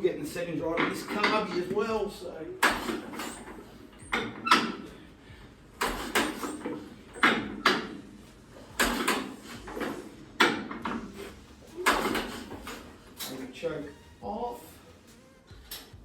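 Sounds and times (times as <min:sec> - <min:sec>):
tractor engine firing in bursts: 0:02.6 - 0:04.9, 0:05.8 - 0:13.2.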